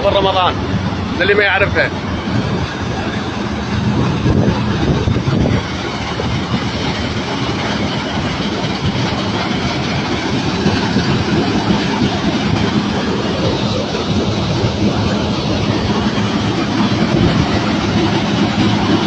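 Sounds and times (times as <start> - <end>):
combine harvester running: 0.0 - 19.0.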